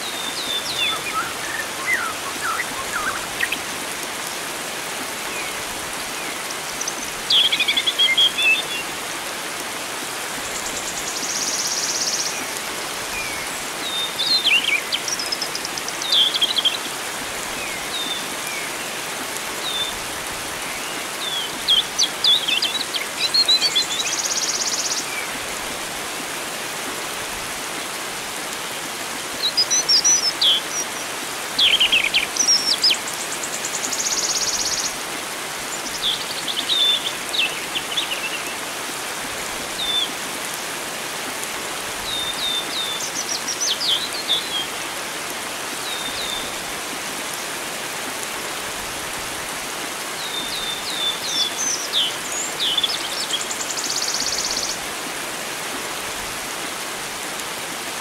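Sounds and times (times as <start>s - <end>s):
birds chirping and trilling: 0.0s - 4.5s
flowing water rushing: 0.0s - 58.0s.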